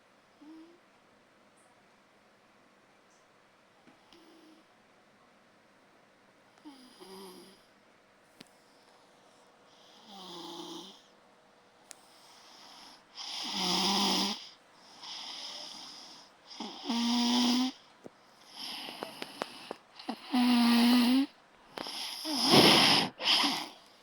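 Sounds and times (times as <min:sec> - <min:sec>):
wheezy breaths: 0:12.0 - 0:24.0
loud snoring: 0:13.2 - 0:14.5, 0:15.1 - 0:17.8, 0:18.6 - 0:23.8.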